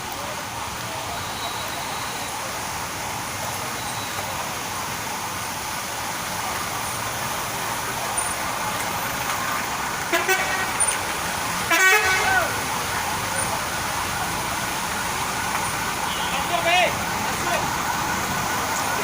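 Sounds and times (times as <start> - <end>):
steady rushing background noise: 0.0 - 19.0
vehicle horns honking: 10.0 - 11.0, 11.6 - 12.6, 16.0 - 17.7.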